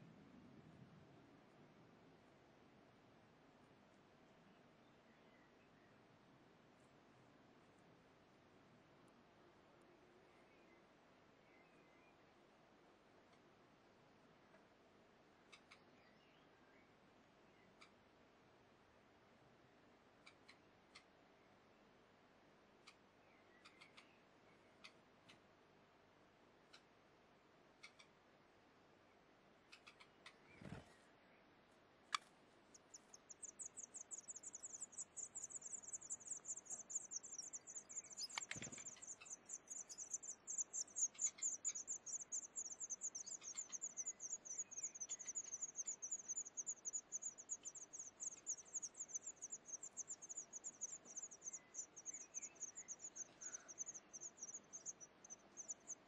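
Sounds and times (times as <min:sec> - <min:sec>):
nestlings chirping for food: 0:22.8 - 0:25.5, 0:27.7 - 0:28.2, 0:29.7 - 0:31.0, 0:32.1 - 0:56.0.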